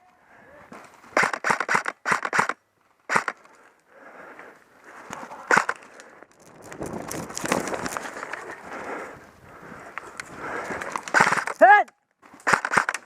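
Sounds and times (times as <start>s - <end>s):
airsoft gun cracks: 1.2s - 3.5s, 5.5s - 5.9s, 11.0s - 11.6s, 12.4s - 13.0s
faint rustling: 2.8s - 11.6s.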